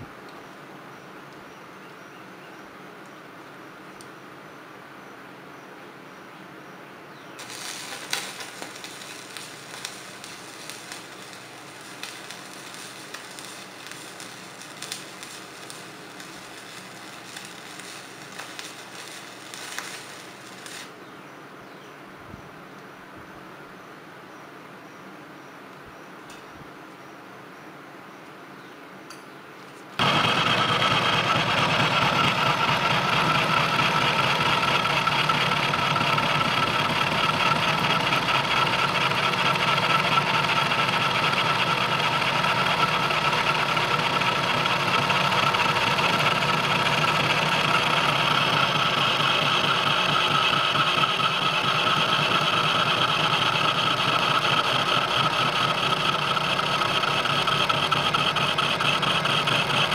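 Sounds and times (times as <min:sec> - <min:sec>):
machine motor running: 0:07.4 - 0:20.9, 0:30.0 - 0:59.9.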